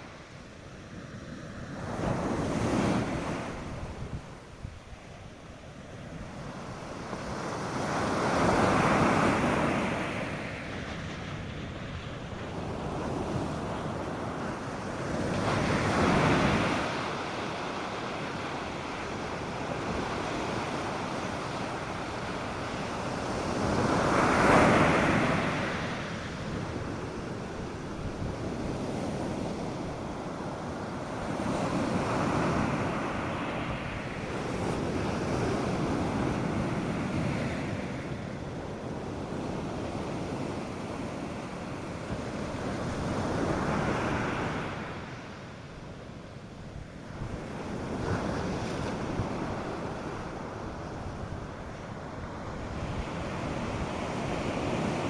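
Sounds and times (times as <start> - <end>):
waves breaking on beach: 0.0 - 55.0
wind buffeting microphone: 1.6 - 45.3.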